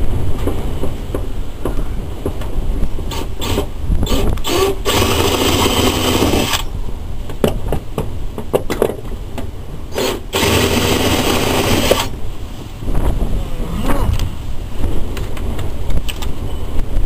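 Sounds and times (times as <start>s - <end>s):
wind rumble on microphone: 0.0s - 17.0s
power drill running: 3.1s - 6.7s, 10.0s - 12.1s.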